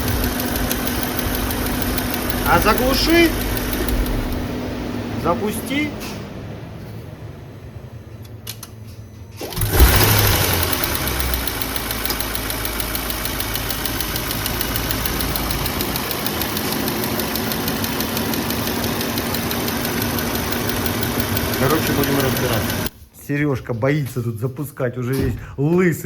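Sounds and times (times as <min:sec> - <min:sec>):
ticking knock from engine: 0:00.0 - 0:04.5, 0:09.6 - 0:22.9
car engine starting and idling: 0:00.0 - 0:08.2, 0:09.3 - 0:22.9.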